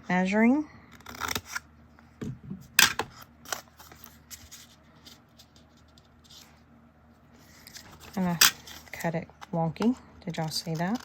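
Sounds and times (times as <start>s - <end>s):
scissors cutting paper: 10.4s - 11.0s.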